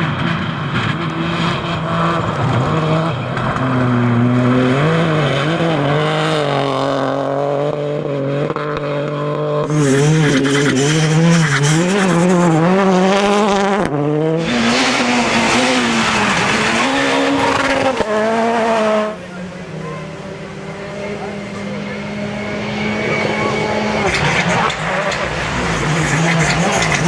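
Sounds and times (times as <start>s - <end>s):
rally car engines revving: 0.0s - 27.0s
gravel hiss from tyres: 9.7s - 12.9s, 25.5s - 27.0s.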